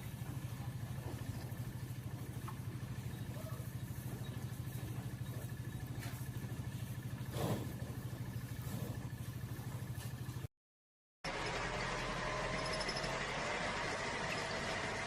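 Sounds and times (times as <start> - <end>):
small motor droning: 11.3 - 15.0.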